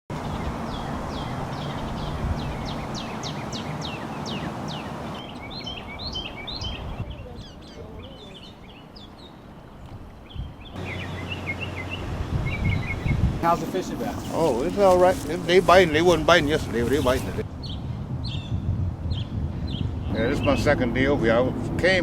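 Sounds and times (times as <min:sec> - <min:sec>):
songbirds chirping: 0:00.1 - 0:21.2
background hiss: 0:13.4 - 0:17.4.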